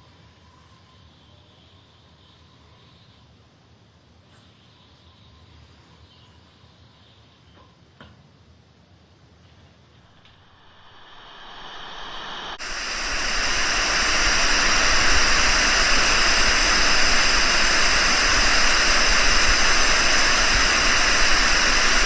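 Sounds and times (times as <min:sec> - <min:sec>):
loud steady rushing hiss: 0:08.3 - 0:22.0.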